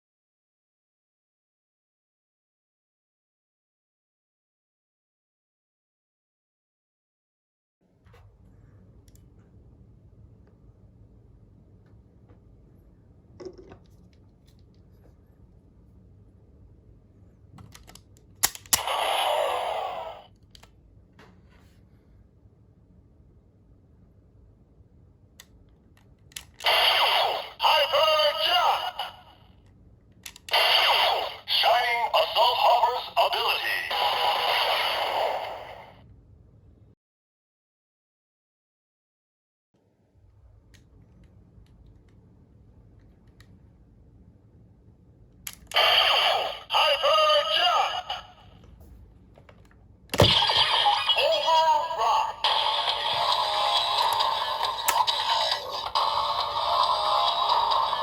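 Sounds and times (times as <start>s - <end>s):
low steady hum: 7.9s - 37.0s, 39.9s - 58.0s
plastic toy clicks: 17.7s - 19.0s, 52.8s - 58.0s.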